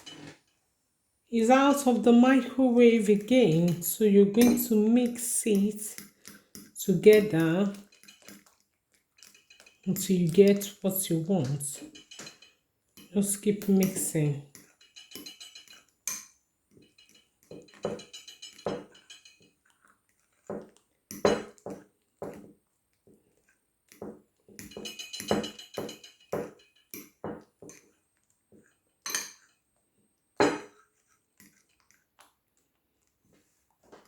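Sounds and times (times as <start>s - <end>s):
fork scraping ceramic dish: 4.4s - 8.6s, 9.2s - 10.8s, 11.5s - 20.5s, 30.4s - 32.0s.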